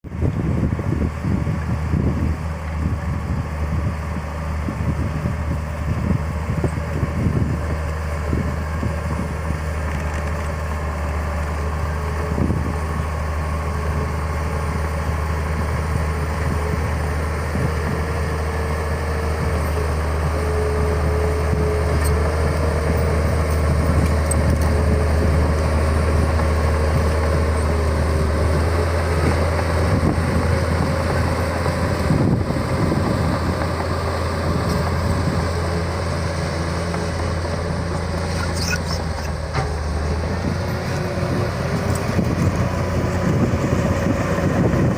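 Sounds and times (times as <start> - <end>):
diesel engine humming: 0.0 - 44.9.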